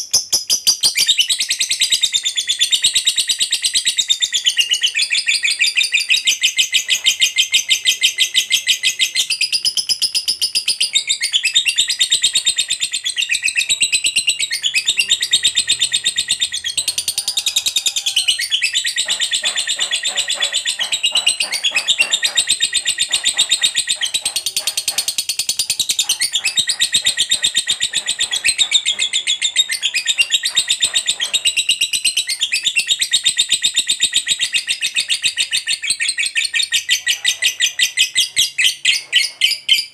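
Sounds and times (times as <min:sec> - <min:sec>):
lovebird chattering trill: 0:00.0 - 0:39.9.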